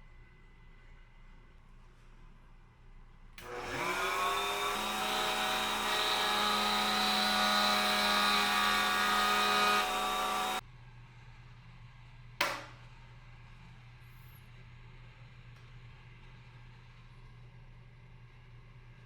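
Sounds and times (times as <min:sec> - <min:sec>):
power tool motor whine: 0:03.4 - 0:10.6.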